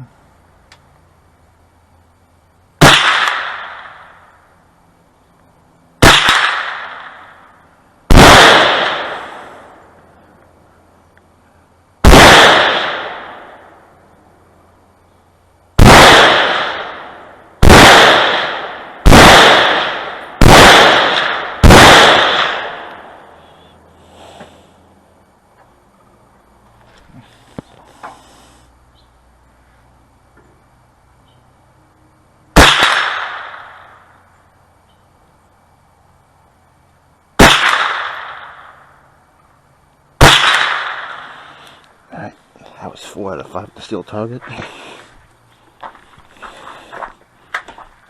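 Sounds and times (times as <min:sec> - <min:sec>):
rifle shots echoing: 0:02.8 - 0:04.2, 0:06.0 - 0:07.4, 0:08.1 - 0:09.9, 0:12.0 - 0:13.8, 0:15.8 - 0:23.4, 0:32.6 - 0:34.0, 0:37.4 - 0:38.9, 0:40.2 - 0:41.4.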